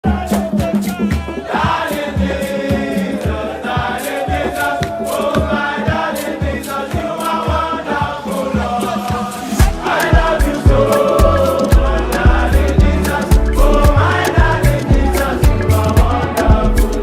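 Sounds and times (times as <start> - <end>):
choir-like singing: 0.0 - 17.0
steady drum beat: 0.0 - 17.0.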